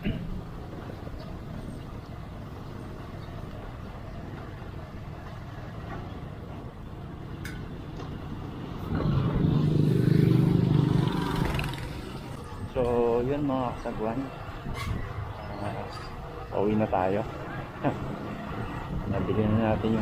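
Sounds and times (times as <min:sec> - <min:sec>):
road vehicle rumble and hiss: 0:00.0 - 0:12.7
engine hum: 0:00.0 - 0:20.0.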